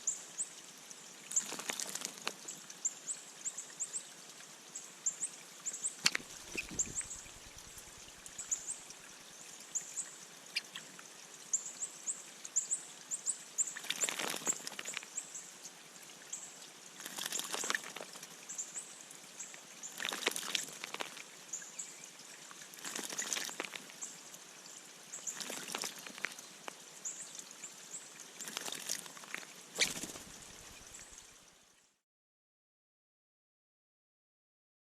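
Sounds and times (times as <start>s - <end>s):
bird splashing in water: 1.3s - 2.4s, 6.0s - 8.6s, 13.8s - 15.0s, 17.0s - 18.2s, 19.9s - 21.3s, 22.7s - 24.0s, 25.2s - 26.4s, 28.4s - 31.2s
high thin bird chirping: 5.8s - 8.9s, 10.5s - 10.9s, 29.8s - 31.2s.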